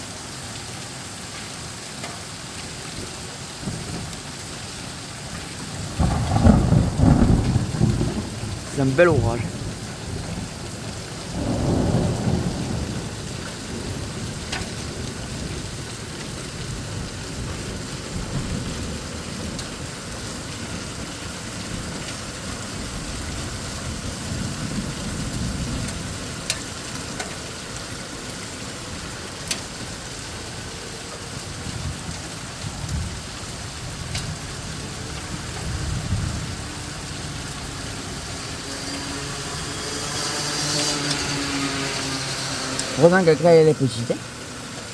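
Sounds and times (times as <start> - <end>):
heavy rain with hail: 0.0 - 44.9
thunder rumbling: 5.3 - 26.4, 31.3 - 44.5.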